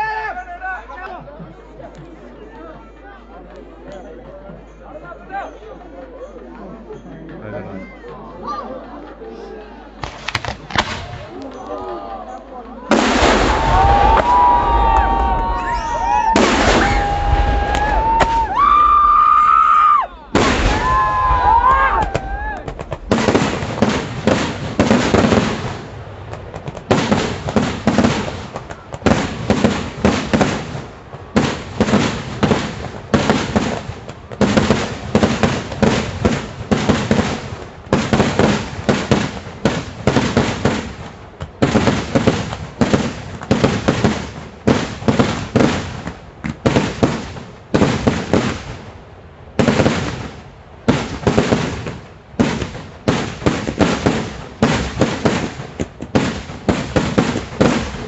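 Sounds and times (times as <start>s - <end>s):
firecracker bangs: 12.9s - 18.6s, 20.3s - 48.8s, 49.6s - 58.0s.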